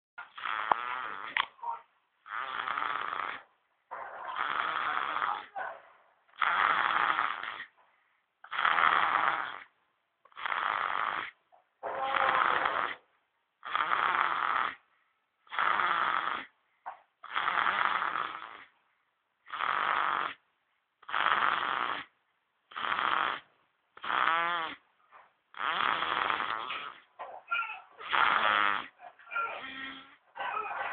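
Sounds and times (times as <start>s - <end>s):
baby snoring: 0.2s - 1.5s, 2.2s - 3.5s, 4.3s - 5.6s, 6.4s - 7.8s, 8.4s - 13.0s, 13.6s - 14.8s, 15.5s - 16.6s, 17.2s - 18.7s, 19.5s - 20.4s, 21.0s - 24.8s, 25.5s - 30.7s.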